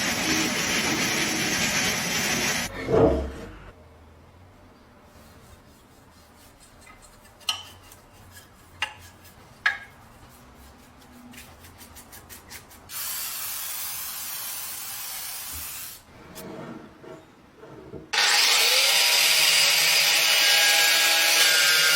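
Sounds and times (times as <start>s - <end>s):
aerosol can spraying: 12.9s - 16.0s.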